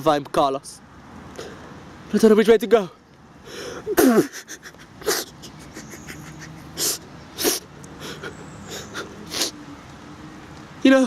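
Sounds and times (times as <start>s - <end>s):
man breathing and sniffing: 1.3s - 1.9s, 3.4s - 9.6s.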